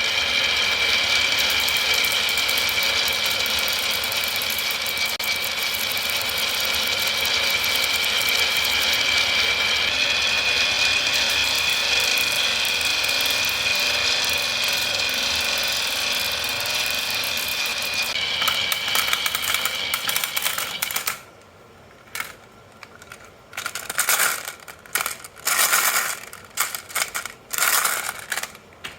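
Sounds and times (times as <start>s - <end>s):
marbles rattling down a track: 0.0s - 21.1s, 23.6s - 28.6s.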